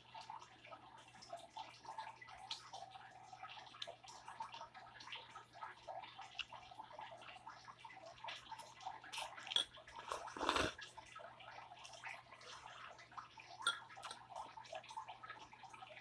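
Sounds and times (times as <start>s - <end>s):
slurping noodles: 9.1s - 10.9s.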